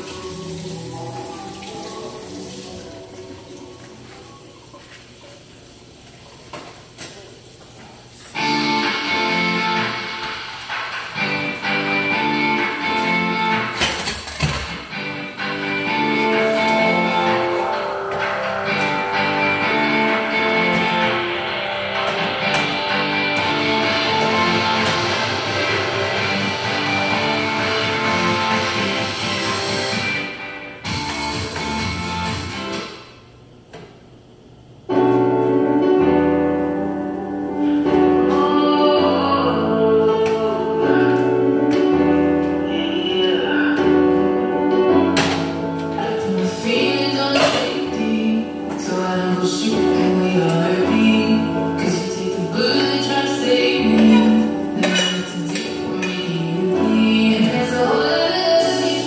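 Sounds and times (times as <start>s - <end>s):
song with piano and singing: 0.0s - 5.0s, 35.0s - 59.0s
guitar-led music: 8.3s - 33.0s, 34.9s - 59.0s.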